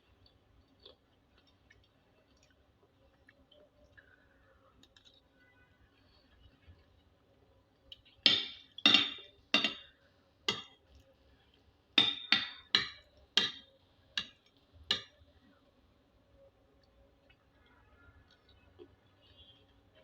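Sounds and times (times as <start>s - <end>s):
utensil clinking against dish: 8.3s - 10.7s, 12.0s - 15.1s.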